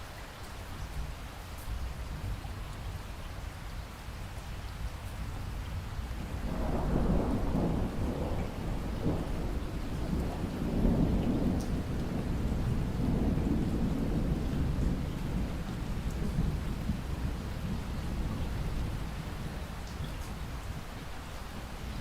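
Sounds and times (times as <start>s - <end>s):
steady rain: 0.0s - 22.0s
rolling thunder: 6.2s - 20.8s.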